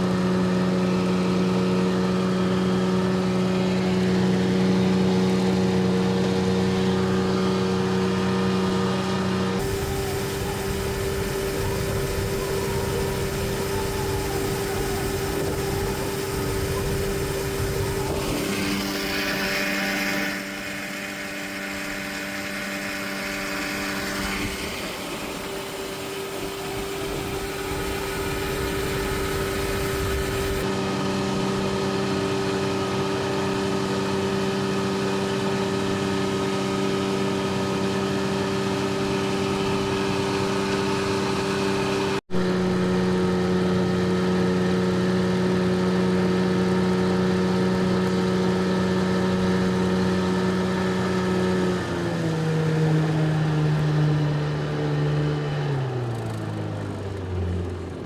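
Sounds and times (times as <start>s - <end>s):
motor humming: 9.5s - 31.4s, 38.8s - 54.1s.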